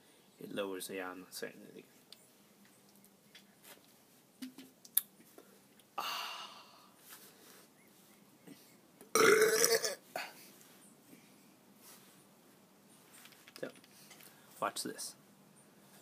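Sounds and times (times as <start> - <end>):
person burping loudly: 9.1 - 10.3.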